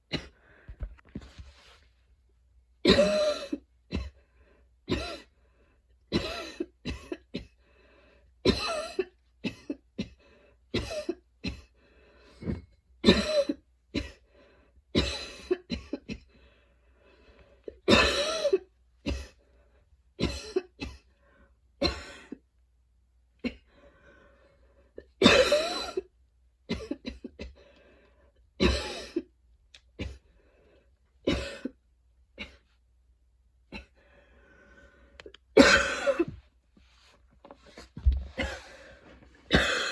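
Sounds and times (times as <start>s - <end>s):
woman coughing wheezily: 2.9s - 4.1s, 6.1s - 7.5s, 13.0s - 14.2s, 17.9s - 19.4s, 20.2s - 21.0s, 25.2s - 26.1s, 26.7s - 27.6s, 28.6s - 29.3s, 31.3s - 31.8s, 35.6s - 36.4s, 38.3s - 38.8s, 39.5s - 39.9s.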